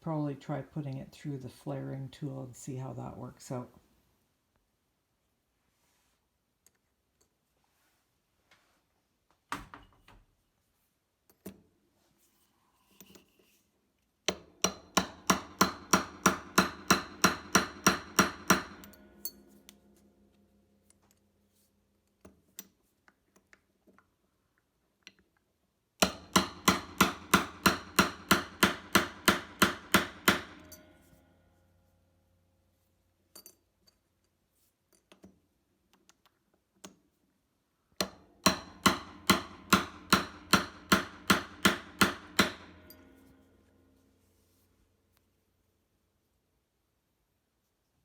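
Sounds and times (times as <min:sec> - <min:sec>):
hammer striking metal: 0:26.0 - 0:31.0.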